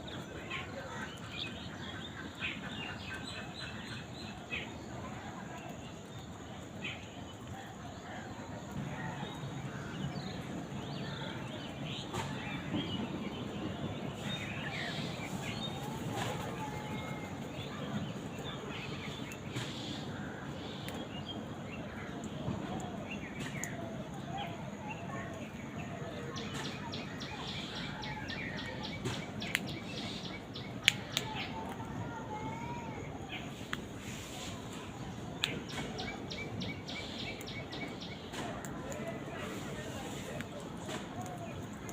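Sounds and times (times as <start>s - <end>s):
outdoor background noise: 0.0s - 41.9s
steady background noise: 0.0s - 41.9s
birds chirping: 24.4s - 41.9s.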